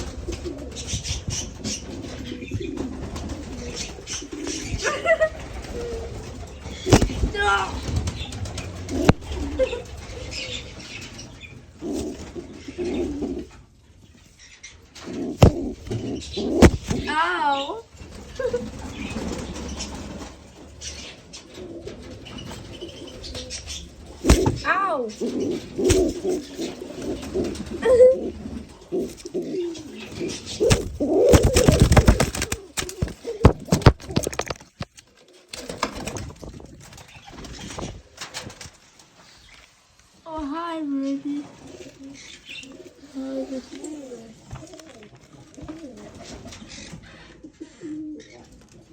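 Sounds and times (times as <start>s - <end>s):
wings flapping: 0.0s - 13.6s, 14.9s - 39.6s
pigeons cooing: 0.0s - 39.5s, 41.0s - 48.9s.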